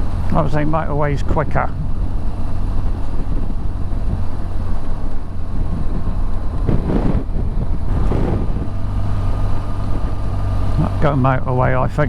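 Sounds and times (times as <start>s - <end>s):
motorcycle engine rumble: 0.0s - 12.0s
wind on microphone: 1.7s - 11.0s.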